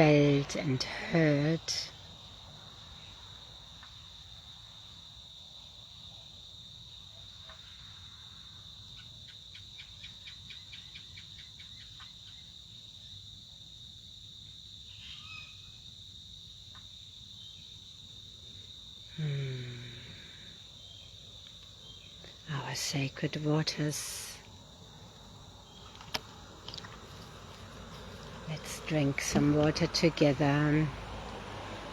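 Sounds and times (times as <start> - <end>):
insects chirring: 0.0 - 31.9
quick insect chirps: 14.4 - 29.5.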